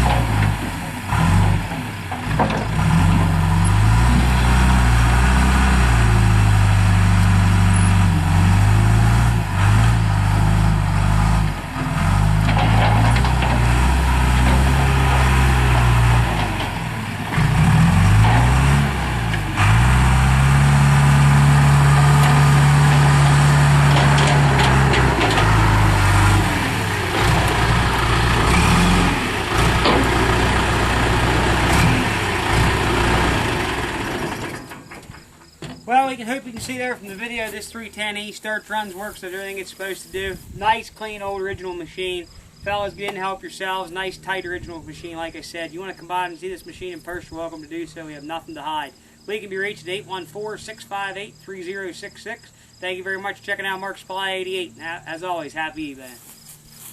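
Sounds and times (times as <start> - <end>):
diesel engine revving: 0.0 - 34.9.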